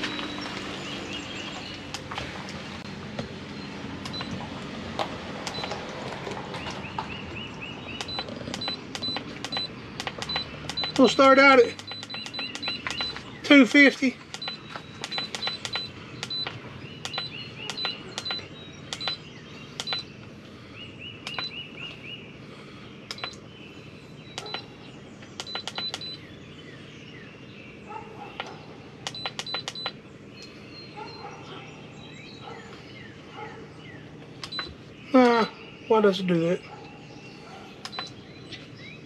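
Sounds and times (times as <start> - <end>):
control panel beeping: 0.0 - 0.7, 3.5 - 4.4, 5.4 - 5.8, 7.8 - 20.1, 21.2 - 22.0, 23.1 - 23.4, 24.2 - 26.2, 29.0 - 30.0, 34.4 - 35.5, 37.8 - 38.2.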